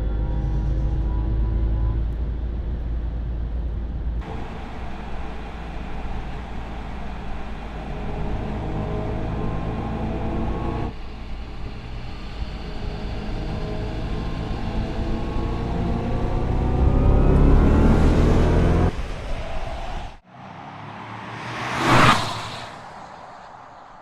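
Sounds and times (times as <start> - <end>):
road noise rumble: 2.0 - 24.0
electric motor whine: 4.2 - 18.8.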